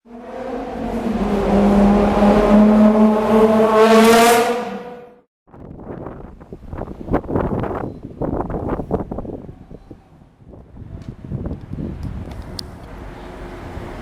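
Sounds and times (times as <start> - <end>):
car engine accelerating: 0.0 - 5.2.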